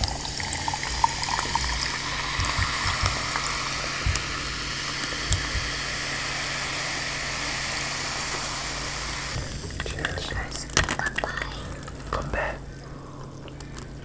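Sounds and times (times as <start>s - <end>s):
soft low knocks: 0.0s - 6.7s
sparkling water fizzing: 0.0s - 12.4s.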